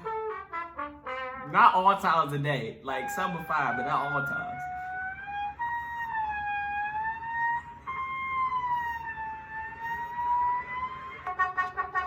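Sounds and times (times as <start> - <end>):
short brass notes: 0.0 - 2.0, 8.6 - 12.0
wailing siren: 3.0 - 12.0.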